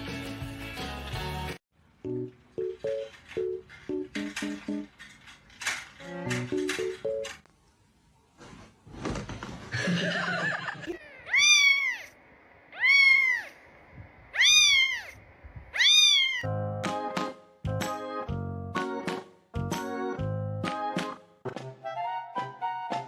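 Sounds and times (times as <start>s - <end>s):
music: 0.0s - 5.0s, 6.0s - 7.4s, 16.5s - 23.0s
cat meowing: 10.9s - 13.6s, 14.3s - 16.5s.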